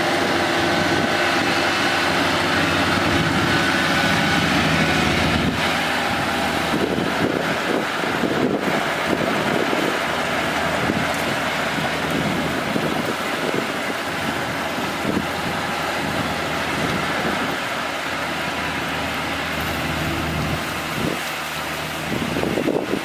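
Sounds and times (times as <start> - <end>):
combine harvester running: 0.0 - 23.0.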